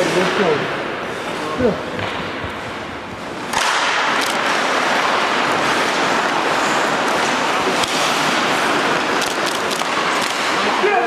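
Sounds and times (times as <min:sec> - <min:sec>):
sticks or puck clacking: 0:00.0 - 0:11.0
skate blades scraping on ice: 0:02.6 - 0:11.0.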